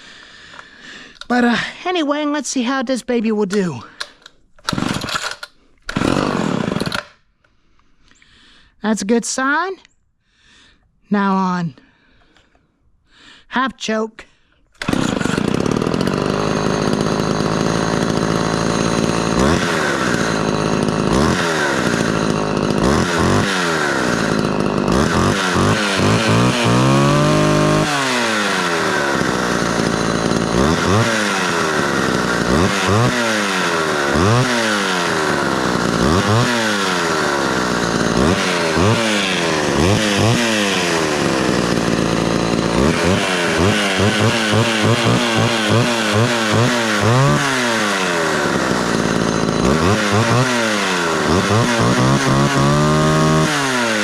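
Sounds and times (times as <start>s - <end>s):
chainsaw revving and idling: 3.5s - 7.2s, 14.8s - 54.0s.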